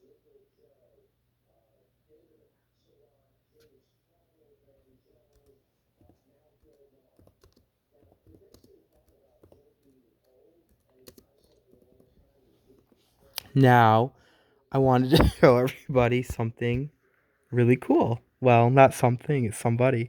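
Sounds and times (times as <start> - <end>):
computer keyboard and mouse clicks: 5.3 - 12.1.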